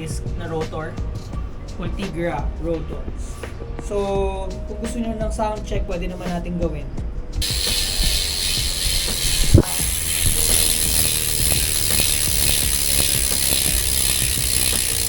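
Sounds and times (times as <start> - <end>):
bicycle freehub ticking: 7.4 - 15.0.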